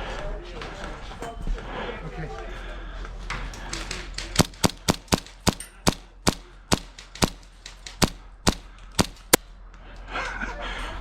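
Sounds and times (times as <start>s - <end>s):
airsoft pistol shots: 4.4s - 9.4s.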